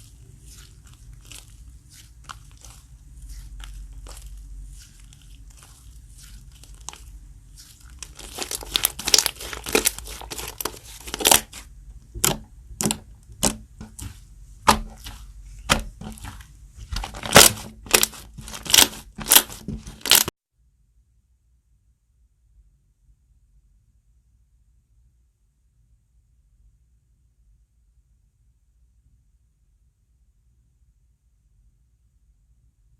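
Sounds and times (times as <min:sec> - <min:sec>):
slime squishing by hand: 0:00.0 - 0:20.3.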